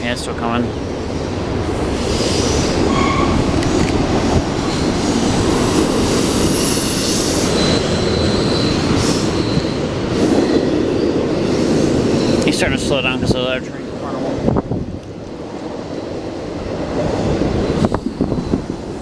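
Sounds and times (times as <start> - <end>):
freight train cars rolling past: 0.0 - 19.0
steel wheels on rails: 1.0 - 19.0
high wheel squeal: 2.1 - 3.8, 4.6 - 13.0.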